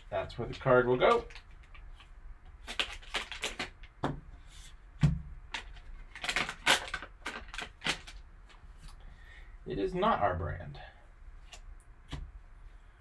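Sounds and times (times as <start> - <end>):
packaging crinkling and rustling: 0.4 - 4.0, 5.5 - 8.6.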